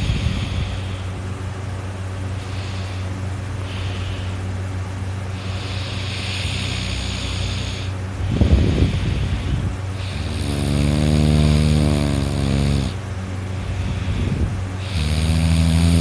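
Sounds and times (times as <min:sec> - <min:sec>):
person snoring loudly: 0:00.0 - 0:01.0, 0:05.4 - 0:13.0, 0:13.7 - 0:16.0.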